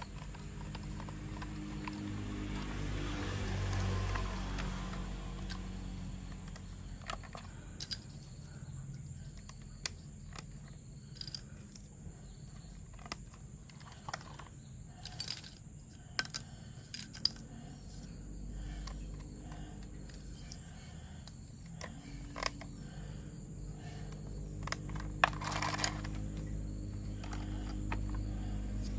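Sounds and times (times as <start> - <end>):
plastic toy parts clicking: 0.0 - 2.2, 6.3 - 8.3, 9.0 - 11.9, 12.6 - 18.1, 18.8 - 22.8, 24.1 - 26.5, 27.2 - 28.2
low steady hum: 0.0 - 28.9.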